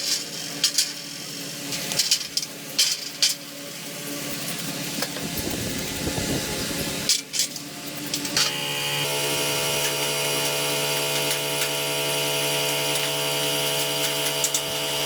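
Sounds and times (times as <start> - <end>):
motor humming: 4.5 - 15.0.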